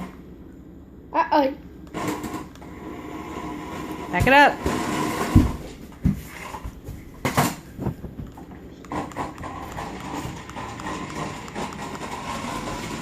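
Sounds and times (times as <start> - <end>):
plastic wheels rattling: 8.9 - 13.0.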